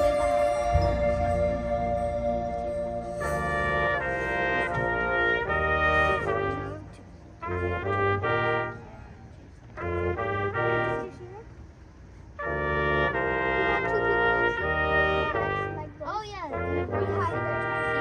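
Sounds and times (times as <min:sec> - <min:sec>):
marching band brass chords: 0:00.0 - 0:09.0, 0:09.6 - 0:11.2, 0:12.4 - 0:18.0.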